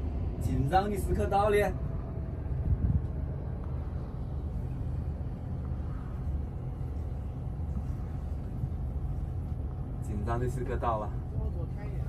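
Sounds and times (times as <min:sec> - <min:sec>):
boat engine rumbling: 0:00.0 - 0:12.0.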